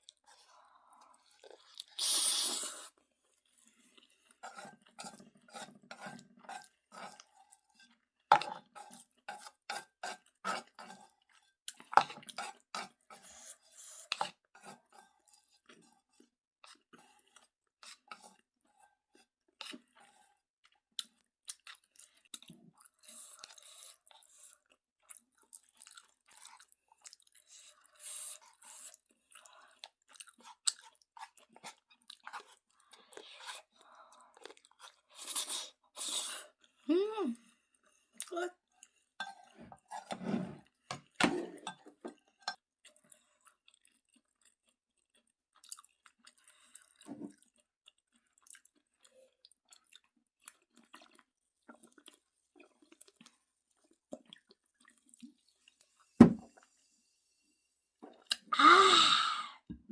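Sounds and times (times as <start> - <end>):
wet chewing mouth clicks: 58.2 - 58.5.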